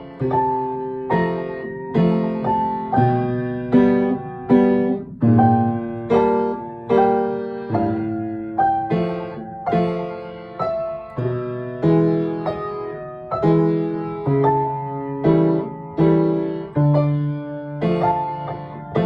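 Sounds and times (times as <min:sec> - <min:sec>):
piano chords ringing: 0:00.0 - 0:19.0.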